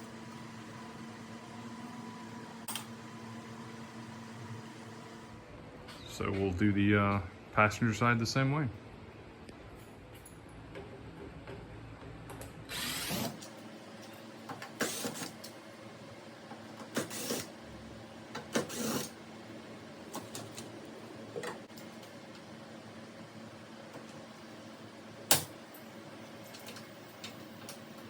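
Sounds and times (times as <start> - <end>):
power driver running: 12.7 - 13.6, 16.5 - 22.1.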